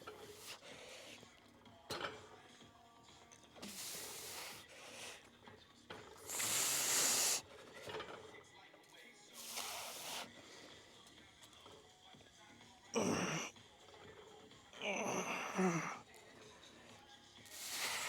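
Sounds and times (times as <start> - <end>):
man hissing exhalations through teeth: 3.6 - 5.2, 6.2 - 7.4, 9.4 - 10.4, 17.5 - 18.0.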